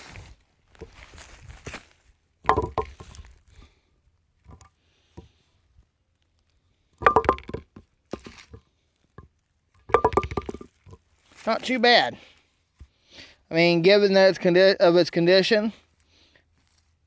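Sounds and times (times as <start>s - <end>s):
bowling pin ringing knocks: 2.5s - 3.0s, 7.0s - 8.3s, 9.9s - 10.7s.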